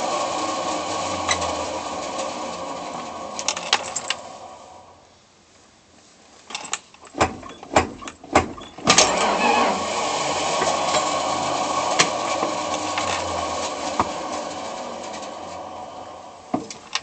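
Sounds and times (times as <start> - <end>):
engine starter grinding whir: 0.0 - 5.1, 7.1 - 17.0
sharp clicks and clunks: 3.4 - 4.3, 6.4 - 9.4, 10.6 - 15.7, 16.5 - 17.0.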